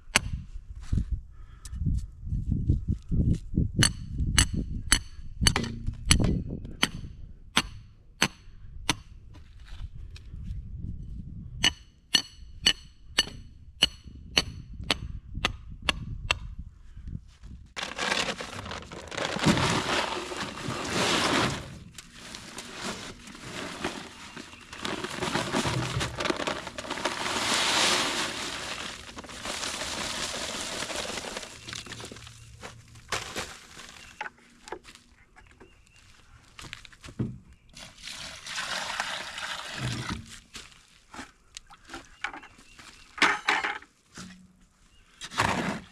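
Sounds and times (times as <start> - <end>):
digging tool striking rocky ground: 3.8 - 9.1
scraping and crunching of dirt: 17.7 - 45.9.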